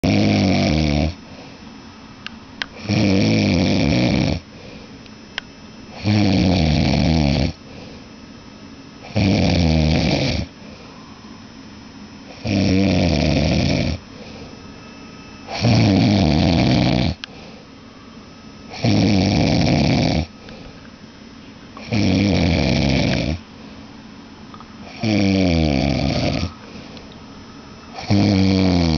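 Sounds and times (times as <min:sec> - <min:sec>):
man snoring loudly: 0:00.0 - 0:01.2, 0:02.8 - 0:04.4, 0:06.0 - 0:07.6, 0:09.0 - 0:10.5, 0:12.3 - 0:14.0, 0:15.5 - 0:17.2, 0:18.7 - 0:20.3, 0:21.8 - 0:23.4, 0:24.9 - 0:26.5, 0:28.0 - 0:28.9
quiet breathing: 0:04.3 - 0:05.0, 0:07.6 - 0:08.2, 0:10.5 - 0:11.4, 0:13.4 - 0:14.7, 0:16.6 - 0:18.1, 0:20.2 - 0:20.9, 0:23.0 - 0:24.0, 0:26.1 - 0:27.2.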